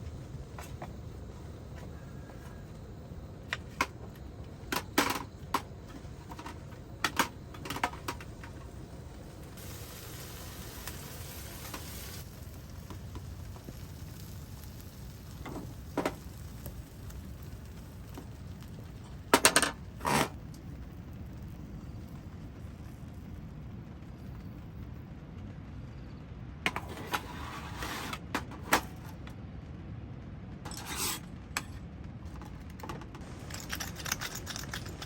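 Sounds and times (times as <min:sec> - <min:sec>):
meat sizzling on a griddle: 0:07.7 - 0:22.3.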